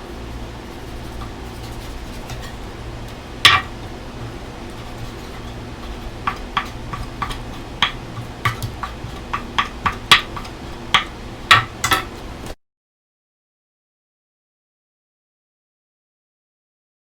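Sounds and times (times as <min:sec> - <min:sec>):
low steady hum: 0:00.0 - 0:12.6
kitchen utensils and dishes clinking: 0:01.1 - 0:12.4.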